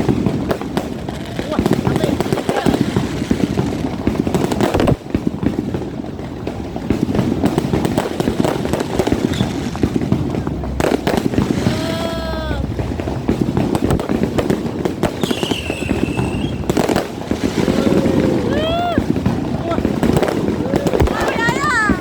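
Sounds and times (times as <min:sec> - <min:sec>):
fireworks bangs and crackles: 0:00.0 - 0:22.0
high falling whistle: 0:15.2 - 0:16.7.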